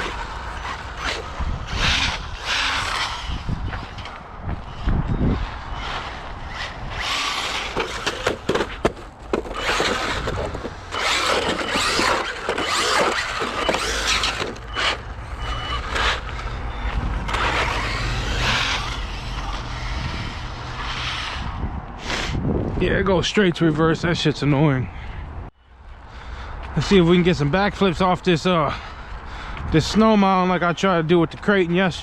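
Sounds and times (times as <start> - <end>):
rc truck motor whining: 0.0 - 22.4
tyre and drivetrain noise: 0.0 - 22.8.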